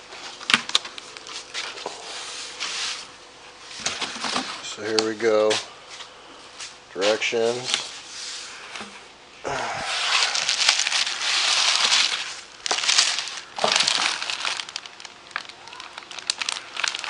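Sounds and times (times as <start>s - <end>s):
packaging crinkling: 9.8s - 17.0s.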